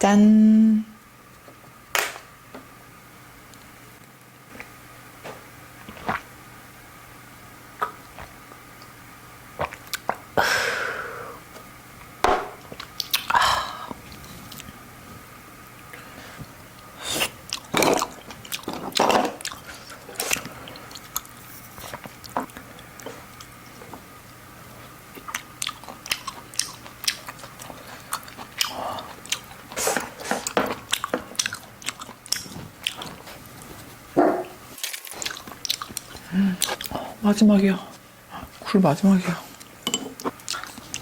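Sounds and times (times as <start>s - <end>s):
chewing: 12.7s - 13.4s, 17.2s - 34.0s, 34.8s - 37.2s, 39.5s - 41.0s.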